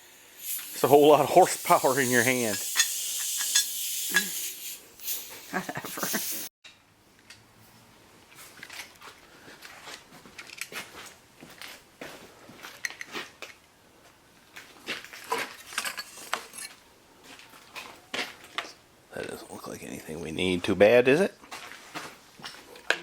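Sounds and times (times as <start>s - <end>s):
metal tools clinking: 15.2s - 16.8s.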